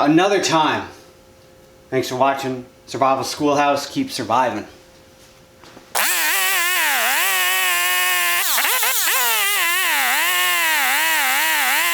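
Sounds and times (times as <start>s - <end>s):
chainsaw engine revving: 6.0s - 11.9s.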